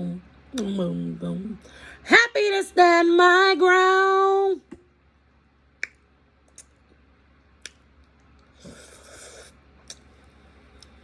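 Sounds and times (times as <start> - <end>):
wet mouth noise: 5.8 - 6.8.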